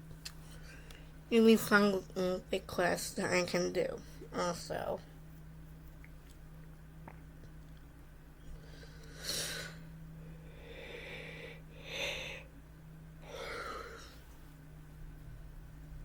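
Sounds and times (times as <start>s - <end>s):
person breathing noisily: 8.6s - 12.5s, 13.2s - 14.3s.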